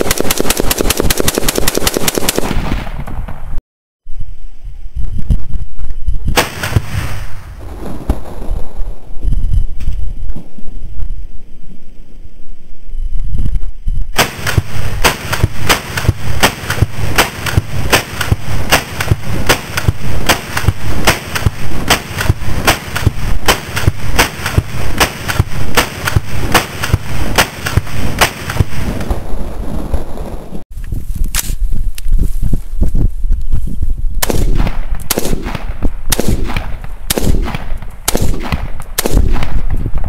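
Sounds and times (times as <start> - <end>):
rifle shots: 0.0 - 3.4, 6.3 - 7.4, 14.2 - 29.2, 34.2 - 40.0.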